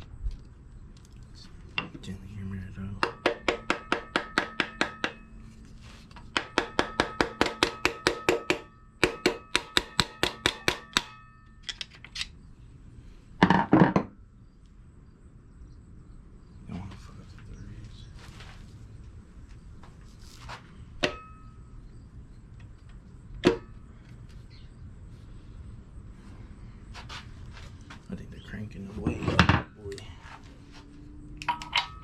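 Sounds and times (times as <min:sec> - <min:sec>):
hammer tapping on metal: 0:02.9 - 0:05.3, 0:06.3 - 0:11.5.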